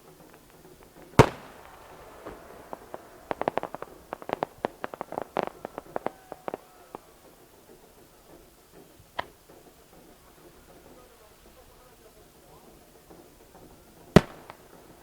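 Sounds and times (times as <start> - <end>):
firework crackle of pops: 0.0 - 15.0
firework shell bang: 0.1 - 11.2.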